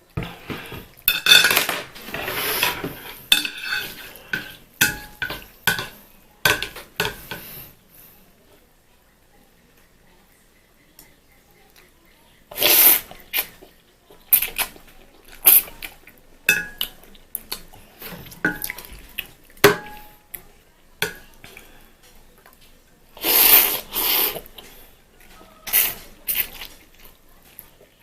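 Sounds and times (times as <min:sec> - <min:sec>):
noodle slurping: 0:12.5 - 0:13.6, 0:23.2 - 0:24.7.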